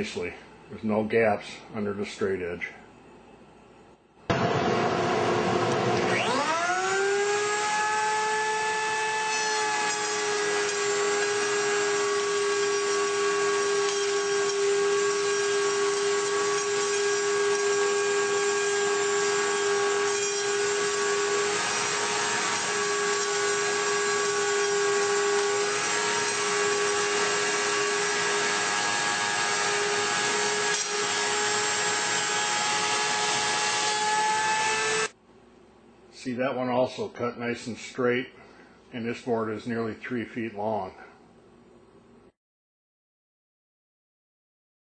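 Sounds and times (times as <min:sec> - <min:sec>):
board cut by router bit: 0:04.3 - 0:35.1
router whining: 0:04.3 - 0:35.2.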